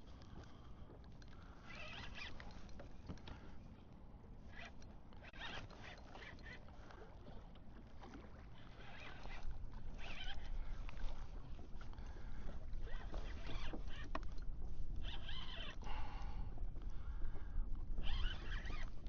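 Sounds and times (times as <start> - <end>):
water splashing around kayak: 0.0 - 19.0.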